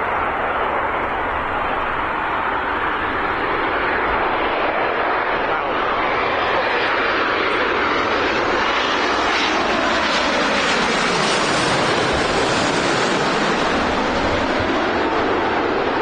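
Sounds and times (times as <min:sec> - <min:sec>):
jet engines rushing: 0:00.0 - 0:16.0.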